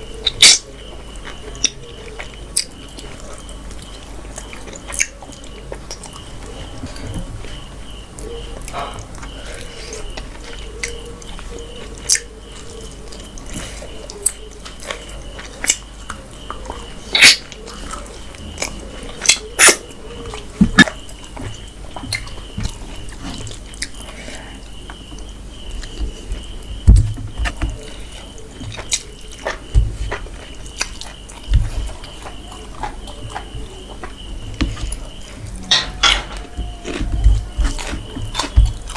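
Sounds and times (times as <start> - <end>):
person chewing food: 0.0 - 38.9
wet chewing mouth sounds: 27.4 - 38.9
low thumps: 33.5 - 38.9.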